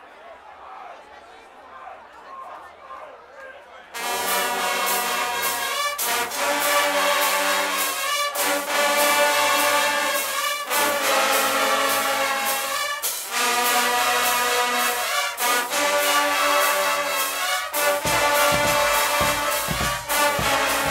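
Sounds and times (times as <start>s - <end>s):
brass band playing chords: 4.0s - 20.9s
drums: 4.2s - 20.9s.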